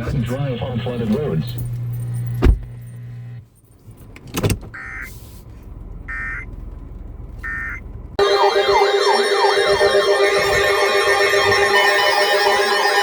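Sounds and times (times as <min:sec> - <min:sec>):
warbling siren-like sound: 0:08.2 - 0:13.0.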